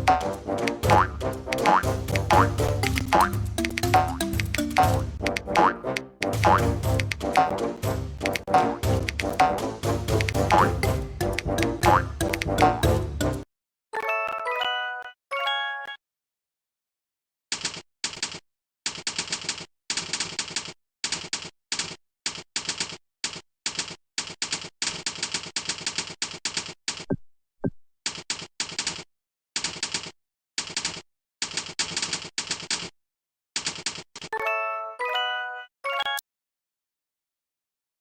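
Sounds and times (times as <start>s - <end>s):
keyboard keystrokes clicking: 2.7s - 6.0s, 8.2s - 9.5s, 12.2s - 12.8s.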